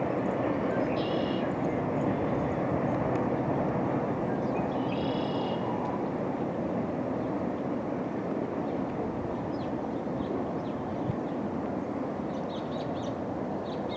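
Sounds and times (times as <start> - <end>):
faint bird chirps: 0.9 - 1.5.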